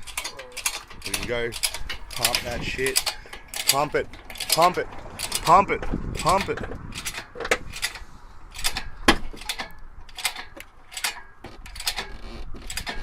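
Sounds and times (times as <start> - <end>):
trolley jack pump clanking: 0.0 - 13.0.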